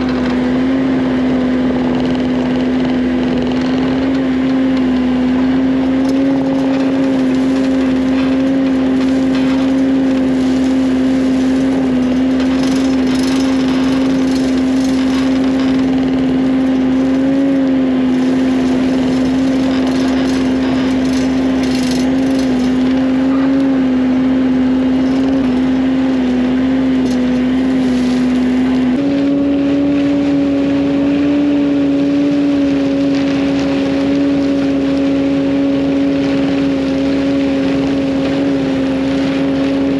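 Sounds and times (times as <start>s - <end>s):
heavy equipment engine running: 0.0s - 39.9s
clattering: 6.0s - 17.4s, 18.1s - 23.6s.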